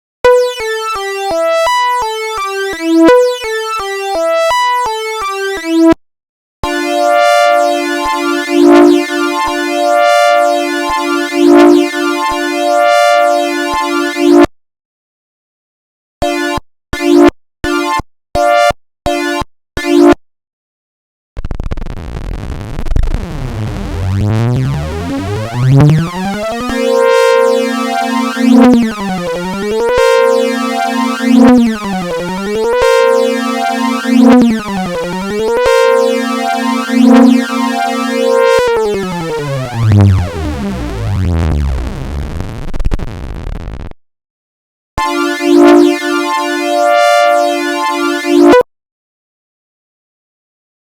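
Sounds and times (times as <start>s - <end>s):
buzzy siren-like electronic tone: 22.3s - 42.6s.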